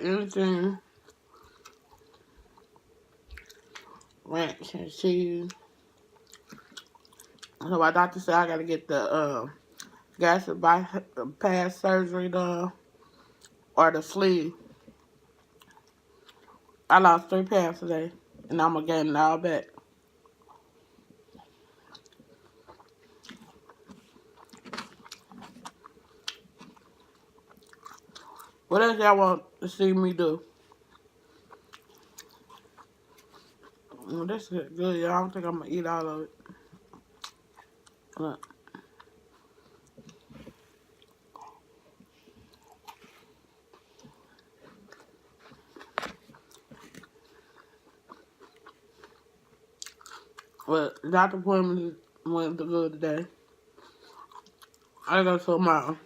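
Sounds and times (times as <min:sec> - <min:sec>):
person chewing: 0:00.8 - 0:04.2, 0:05.5 - 0:07.6, 0:13.0 - 0:13.7, 0:14.6 - 0:16.8, 0:19.7 - 0:28.7, 0:30.4 - 0:34.2, 0:36.3 - 0:50.7, 0:53.4 - 0:55.1.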